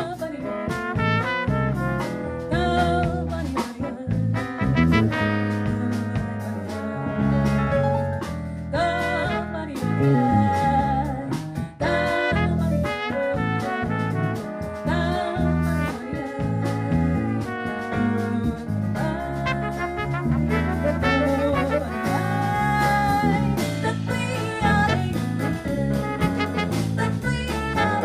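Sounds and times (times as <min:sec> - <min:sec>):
person singing: 0:00.0 - 0:00.8, 0:08.8 - 0:13.2, 0:14.8 - 0:28.0
jazz group playing live: 0:00.0 - 0:28.0.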